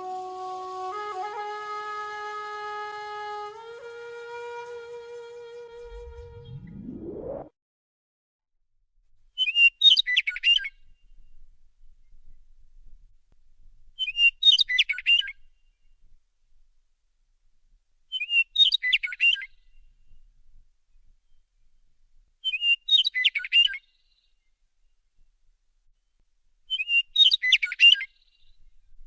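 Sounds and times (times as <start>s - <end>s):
bird singing whistled song: 9.4s - 11.4s, 14.0s - 16.0s, 18.1s - 20.2s, 22.4s - 24.3s, 26.7s - 28.7s.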